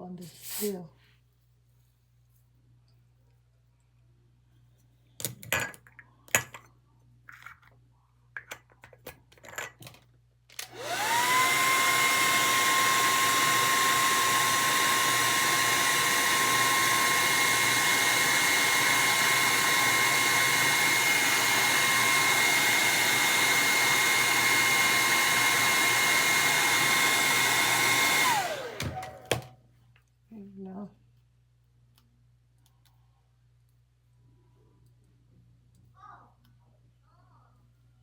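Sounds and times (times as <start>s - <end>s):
hair dryer running: 10.6s - 29.6s.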